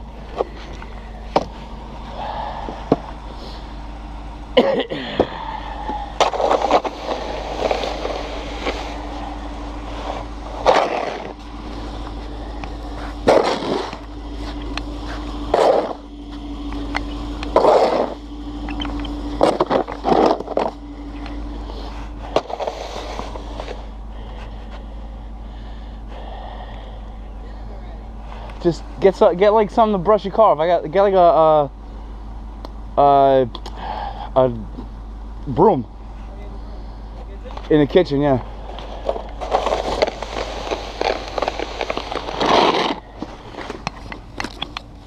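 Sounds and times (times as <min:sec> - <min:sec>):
steady low hum: 0:00.0 - 0:45.0
snow shovel scraping pavement: 0:06.2 - 0:16.4, 0:17.5 - 0:18.3, 0:19.3 - 0:20.8, 0:21.4 - 0:23.9, 0:38.7 - 0:43.8.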